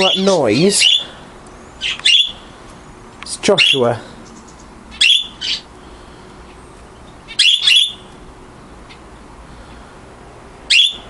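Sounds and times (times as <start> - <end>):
bird shrill calls: 0.0 - 2.6, 3.6 - 5.7, 7.0 - 8.1, 10.7 - 11.0.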